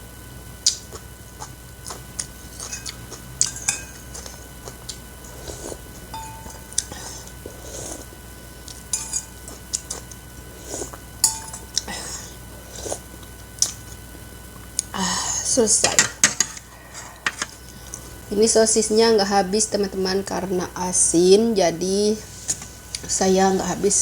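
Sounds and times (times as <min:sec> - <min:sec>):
utensils clinking against bowl: 0:02.5 - 0:04.4, 0:06.0 - 0:06.9, 0:08.7 - 0:09.9, 0:11.2 - 0:11.8, 0:15.8 - 0:17.6.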